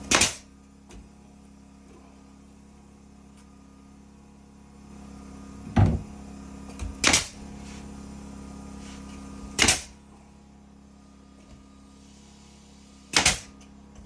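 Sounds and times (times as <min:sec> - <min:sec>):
low steady hum: 0:05.6 - 0:06.9
loud knocks on wood: 0:05.7 - 0:06.2.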